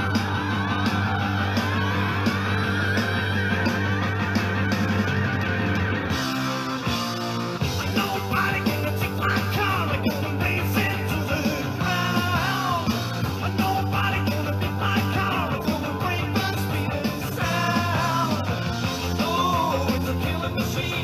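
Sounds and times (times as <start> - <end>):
rock band playing: 0.0 - 21.0
person singing: 7.8 - 21.0.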